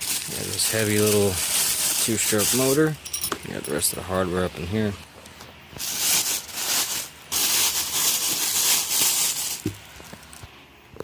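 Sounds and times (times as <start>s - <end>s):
packaging rustling and crinkling: 0.0s - 2.9s, 5.8s - 10.5s.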